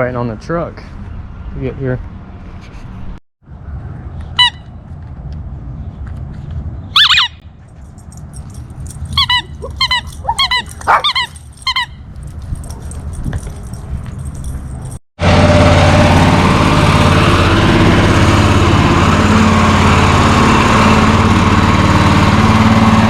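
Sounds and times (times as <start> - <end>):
high-pitched animal calls: 7.0 - 7.4, 9.1 - 12.0.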